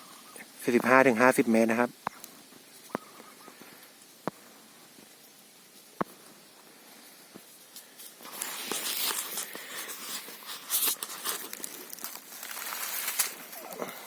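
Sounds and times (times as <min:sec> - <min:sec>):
rustling and crunching: 0:02.0 - 0:14.0.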